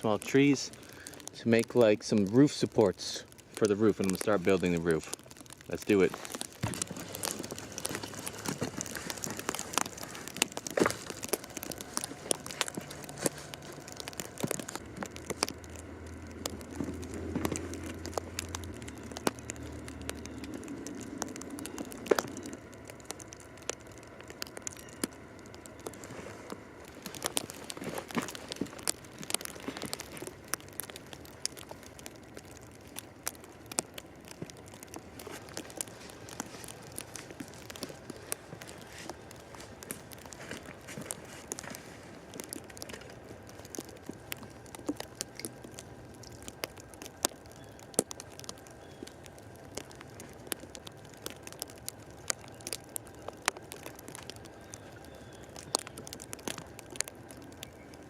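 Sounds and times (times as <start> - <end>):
sharp crack: 0.0 - 57.9
footsteps crunching in snow: 6.1 - 14.8, 35.2 - 42.3.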